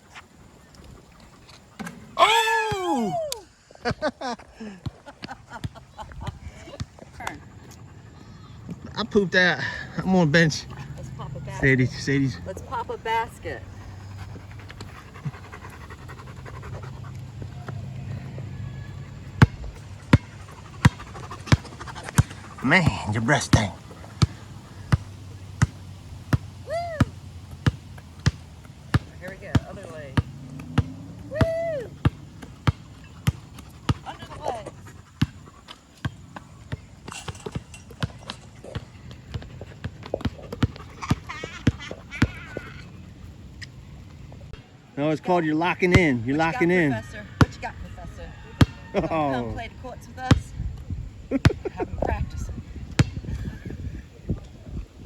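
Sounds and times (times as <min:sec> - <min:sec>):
dog panting: 0:10.4 - 0:18.5, 0:19.6 - 0:25.2, 0:32.5 - 0:36.0, 0:39.3 - 0:43.0
basketball bouncing on court: 0:19.3 - 0:34.6, 0:36.0 - 0:42.7, 0:48.6 - 0:48.8, 0:52.9 - 0:53.4.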